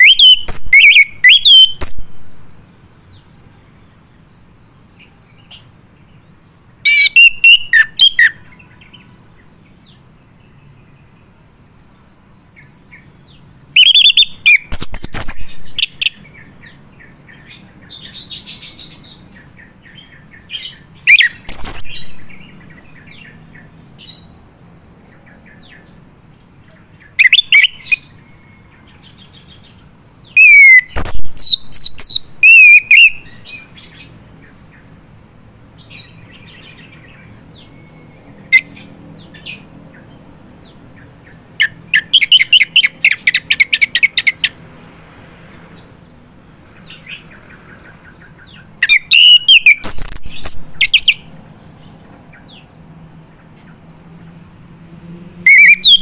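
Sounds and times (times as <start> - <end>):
thrush singing whistles: 0.0 - 2.6, 6.8 - 9.1, 13.0 - 24.4, 27.0 - 29.4, 30.2 - 34.8, 35.6 - 40.1, 41.5 - 44.6, 46.9 - 51.4, 55.4 - 56.0.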